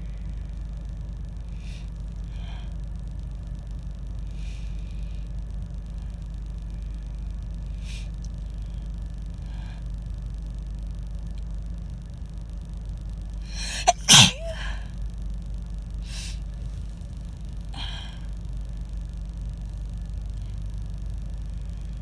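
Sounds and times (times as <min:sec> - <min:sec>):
steady low hum: 0:00.0 - 0:22.0
faint breaths: 0:01.3 - 0:03.4, 0:04.2 - 0:10.4, 0:13.5 - 0:14.9, 0:16.0 - 0:18.5
indrawn breath: 0:13.5 - 0:14.9
woman sneezing: 0:13.6 - 0:14.8.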